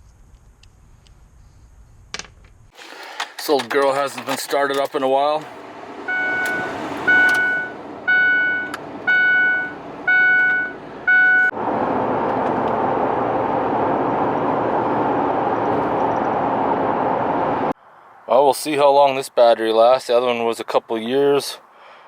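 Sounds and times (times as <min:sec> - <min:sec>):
engine running: 0:05.4 - 0:17.8
vehicle warning chime: 0:06.0 - 0:11.5.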